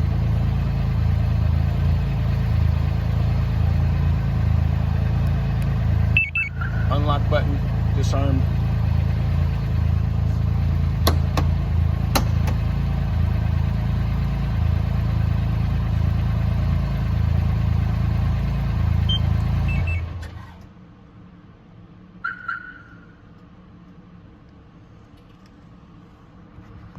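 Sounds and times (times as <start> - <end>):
engine idling: 0.0 - 20.7
short beeps: 6.2 - 6.7.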